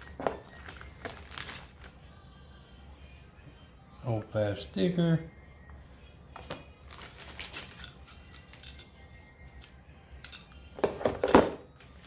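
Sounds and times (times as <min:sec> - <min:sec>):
knocking of small items: 0:00.0 - 0:01.9, 0:10.2 - 0:12.0
packaging rustling: 0:00.0 - 0:01.9, 0:06.9 - 0:07.9.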